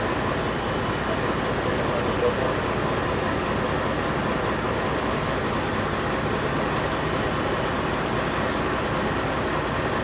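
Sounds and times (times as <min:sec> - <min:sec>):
steady machine noise: 0:00.0 - 0:10.0.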